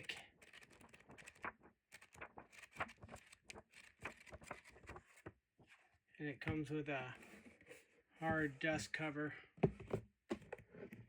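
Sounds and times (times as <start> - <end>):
book pages turning: 0.4 - 5.3.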